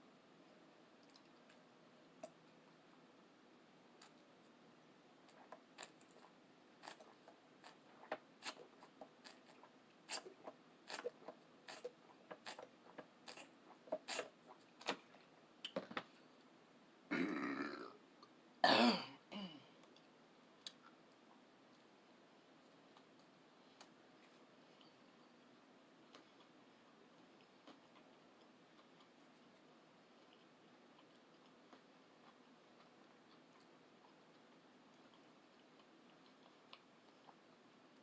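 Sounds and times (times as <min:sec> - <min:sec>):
burps: 0:17.1 - 0:18.0.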